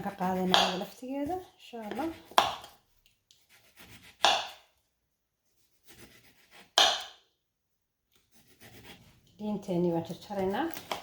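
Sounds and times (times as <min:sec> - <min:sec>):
faint knife scraping: 0:00.0 - 0:04.4, 0:05.5 - 0:06.9, 0:08.1 - 0:09.4.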